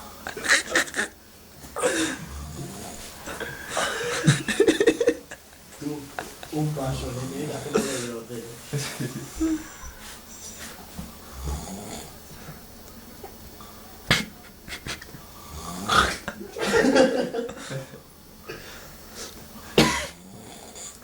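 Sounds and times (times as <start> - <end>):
man snoring: 1.8 - 4.6, 11.2 - 12.4, 15.4 - 16.4, 19.8 - 21.0.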